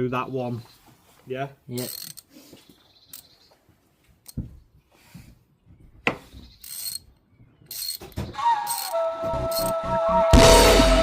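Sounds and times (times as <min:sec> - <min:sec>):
hand ratchet clicking: 0:01.8 - 0:02.3, 0:06.6 - 0:07.0, 0:07.7 - 0:08.1, 0:08.7 - 0:09.7
music: 0:08.4 - 0:11.0.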